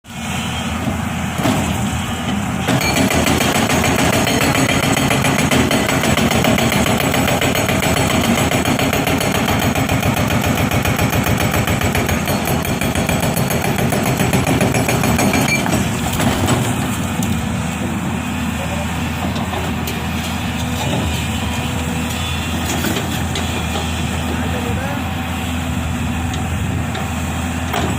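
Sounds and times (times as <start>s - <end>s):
excavator engine running: 0.1s - 27.9s
hydraulic rock breaker hammering: 2.6s - 17.0s, 26.9s - 27.9s.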